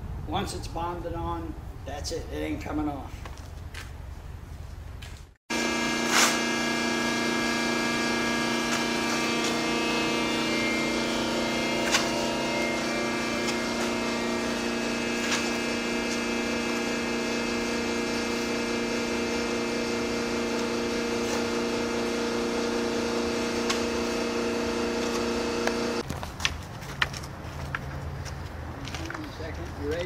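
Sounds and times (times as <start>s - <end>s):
steady motor hum: 5.5s - 26.0s.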